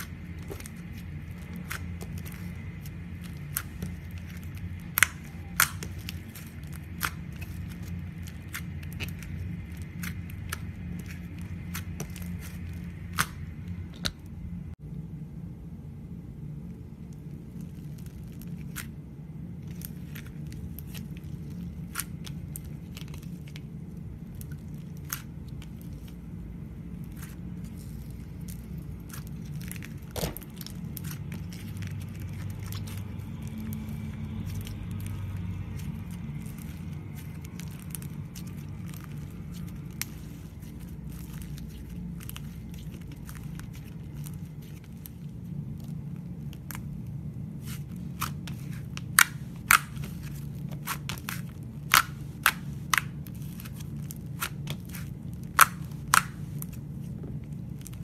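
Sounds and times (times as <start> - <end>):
slime clicking and popping: 0.0 - 14.2, 48.1 - 56.7
steady low hum: 0.0 - 58.0.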